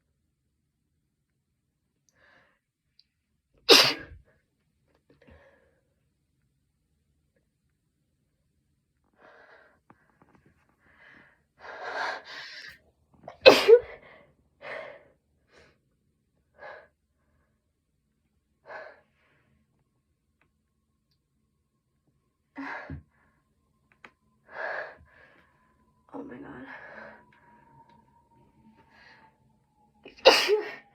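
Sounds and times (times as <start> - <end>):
person sneezing: 3.7 - 4.2, 13.4 - 13.9, 30.2 - 30.8.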